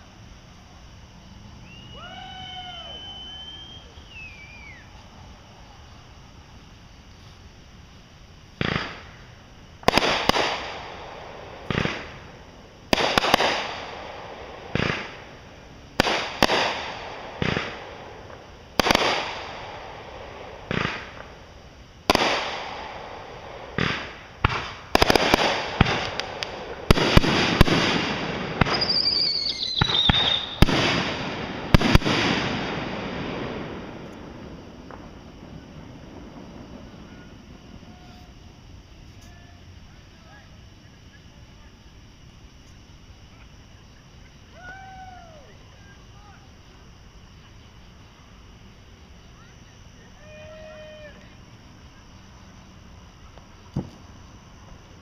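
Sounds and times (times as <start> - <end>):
fireworks bangs and crackle: 1.3 - 5.2, 6.2 - 55.0
falling whistle: 1.6 - 5.0, 28.7 - 30.6, 36.9 - 38.3.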